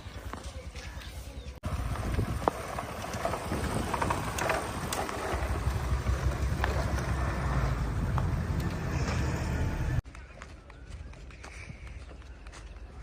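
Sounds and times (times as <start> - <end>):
diesel engine rumble: 0.4 - 10.0.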